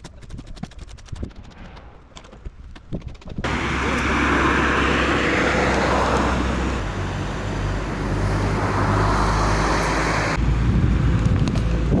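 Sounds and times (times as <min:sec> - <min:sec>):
engine droning: 0:03.4 - 0:12.0.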